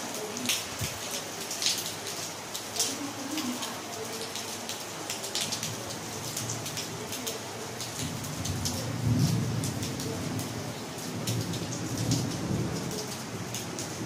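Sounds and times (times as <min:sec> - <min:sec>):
steady rain: 0:00.0 - 0:14.0.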